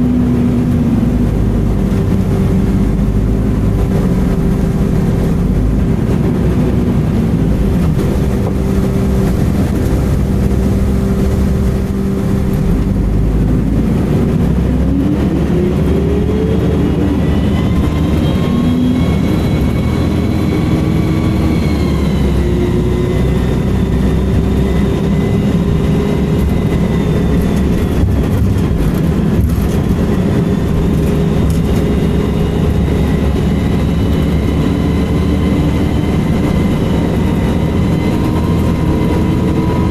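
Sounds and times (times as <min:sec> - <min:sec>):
bus diesel engine running: 0:00.0 - 0:39.9.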